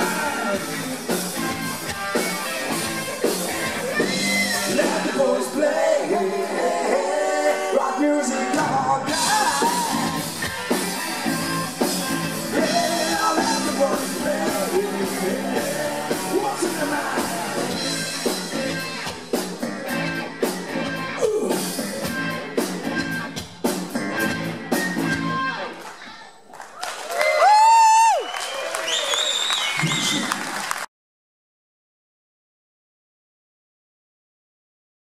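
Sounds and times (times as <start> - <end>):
lead singer singing: 0.0 - 1.4, 3.8 - 10.4, 12.5 - 19.1
live rock band playing: 0.0 - 25.9.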